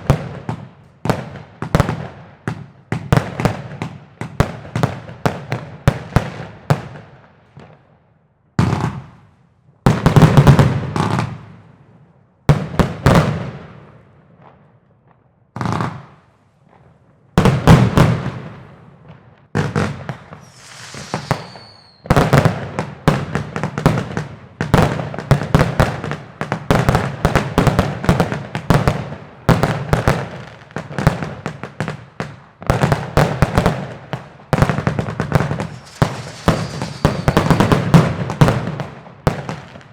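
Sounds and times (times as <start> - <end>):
firework bangs and crackling: 0.0 - 8.0, 8.6 - 39.9
high firework whistle: 20.3 - 22.3, 35.6 - 38.1.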